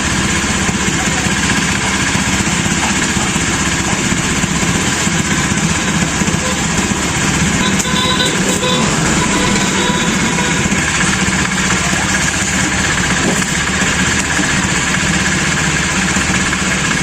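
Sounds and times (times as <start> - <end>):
low hum: 4.9 - 13.6.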